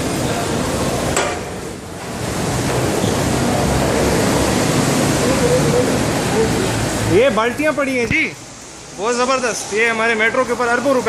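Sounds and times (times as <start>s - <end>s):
heavy rain: 0.0s - 11.0s.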